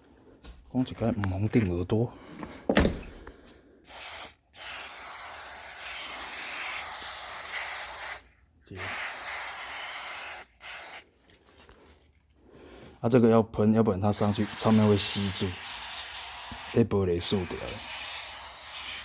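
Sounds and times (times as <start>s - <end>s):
short low thump: 2.7s - 3.3s
aerosol spray can hissing: 3.9s - 8.2s, 8.8s - 11.0s, 14.1s - 19.0s.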